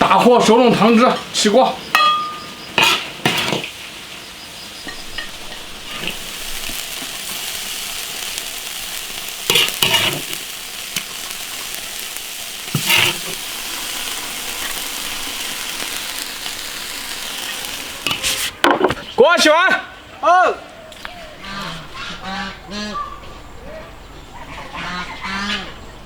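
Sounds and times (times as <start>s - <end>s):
stew sizzling in a wok: 0.0s - 18.8s
spatula clattering: 0.1s - 3.7s, 9.5s - 10.4s
spatula scraping a wok: 2.0s - 3.8s, 4.9s - 7.5s, 9.4s - 14.8s, 15.5s - 19.1s.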